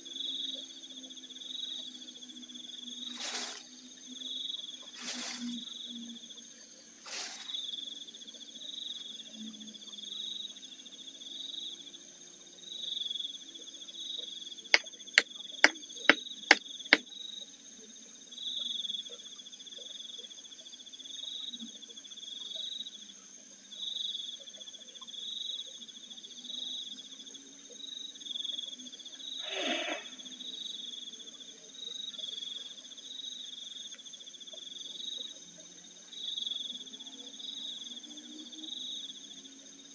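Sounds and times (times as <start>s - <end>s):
crickets chirping: 0.0s - 39.9s.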